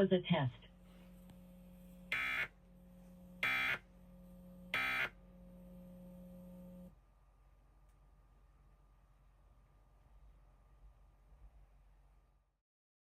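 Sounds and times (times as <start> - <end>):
faint steady hum: 0.0 - 12.6
harsh digital buzzes: 1.1 - 7.0.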